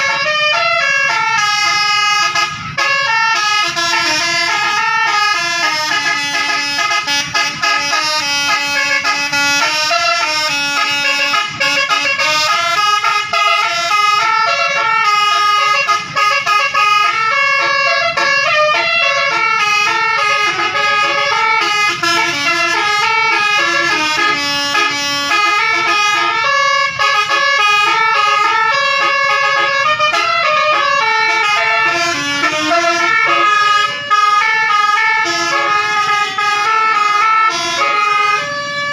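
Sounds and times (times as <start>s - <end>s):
bus horn playing melody: 0.0s - 38.9s.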